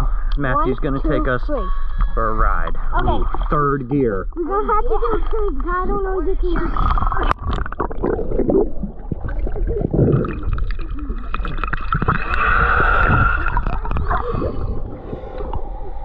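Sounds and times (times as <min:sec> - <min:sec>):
water gurgling and churning: 0:00.0 - 0:16.0.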